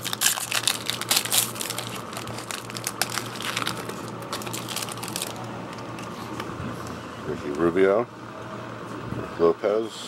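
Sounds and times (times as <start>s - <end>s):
plastic wrapper tearing and crinkling: 0.0s - 5.4s.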